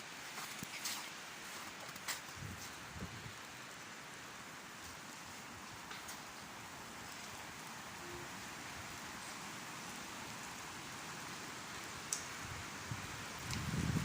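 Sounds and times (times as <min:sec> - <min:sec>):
hiss of falling snow: 0:00.0 - 0:14.0
sharp tick: 0:12.1 - 0:12.3.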